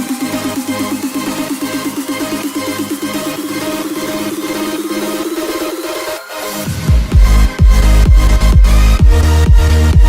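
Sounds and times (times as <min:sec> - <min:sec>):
electronic dance music: 0:00.0 - 0:10.0
fast repeating synth figure: 0:00.5 - 0:06.3.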